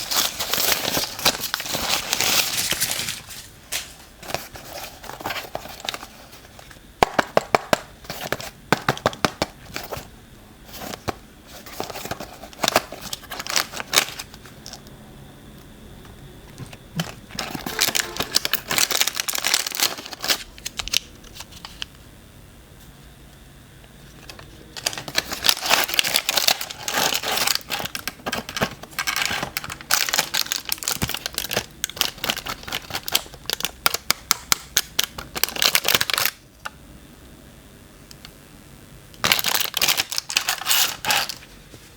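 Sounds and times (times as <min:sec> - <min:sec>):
packaging crinkling and tearing: 0:00.0 - 0:06.3, 0:10.7 - 0:14.8, 0:17.0 - 0:21.9, 0:24.2 - 0:36.4, 0:39.2 - 0:41.5.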